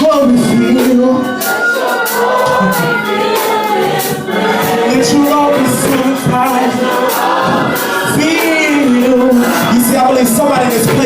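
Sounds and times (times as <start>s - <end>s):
church band playing: 0.0s - 11.0s
drums and cymbals beat: 0.0s - 11.0s
gospel choir singing: 0.0s - 11.0s.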